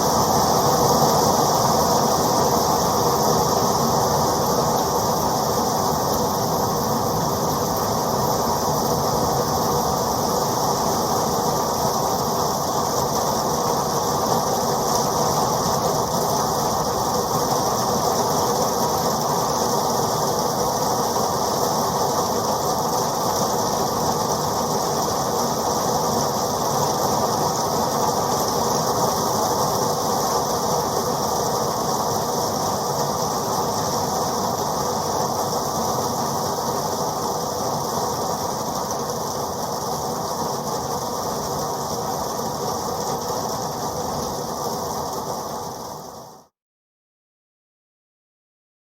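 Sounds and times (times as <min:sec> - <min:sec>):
heavy rain: 0:00.0 - 0:46.4.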